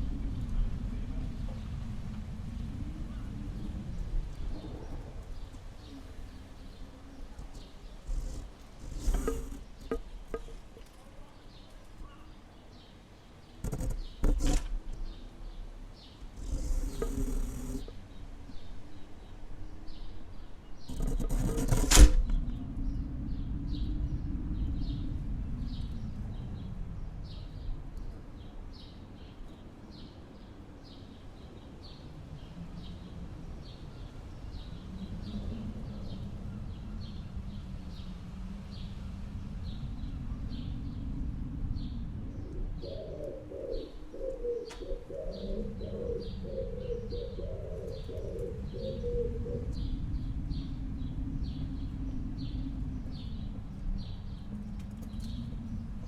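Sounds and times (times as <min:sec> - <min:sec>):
steady low rumble: 0:00.0 - 0:10.9, 0:13.3 - 0:29.8, 0:32.0 - 0:56.0
dove cooing: 0:16.2 - 0:18.0, 0:42.4 - 0:50.2.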